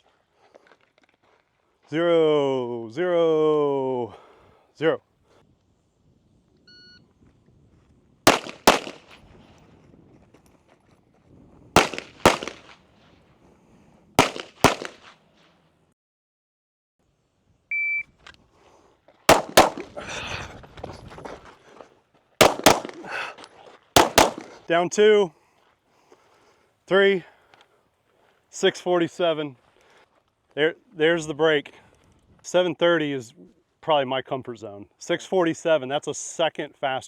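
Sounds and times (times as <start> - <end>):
handgun shots: 8.3 - 9.2, 11.8 - 12.8, 14.2 - 15.2, 19.3 - 20.1, 22.4 - 23.3, 24.0 - 24.6.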